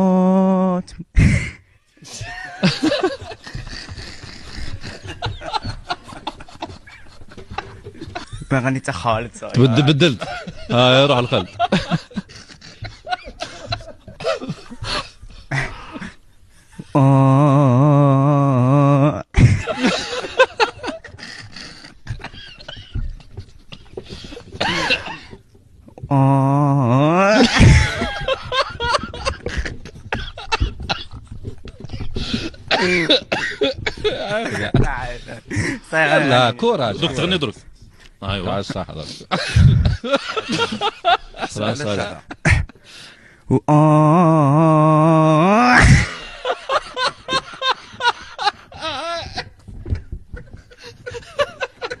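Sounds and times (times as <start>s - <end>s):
person laughing: 26.1s - 31.1s, 39.4s - 41.4s, 43.5s - 52.0s
squeaky vocal noises: 43.5s - 46.2s.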